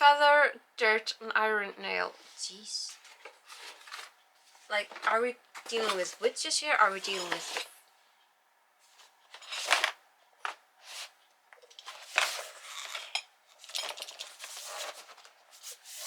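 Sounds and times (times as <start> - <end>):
cardboard boxes rustling: 2.9 - 6.3, 9.0 - 10.0, 11.8 - 13.0, 13.6 - 16.0.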